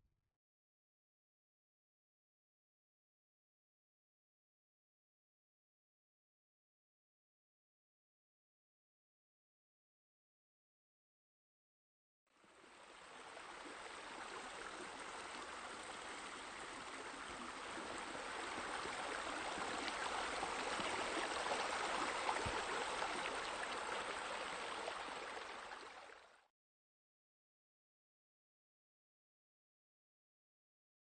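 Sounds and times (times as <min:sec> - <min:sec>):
water feature splashing: 0:12.8 - 0:26.3.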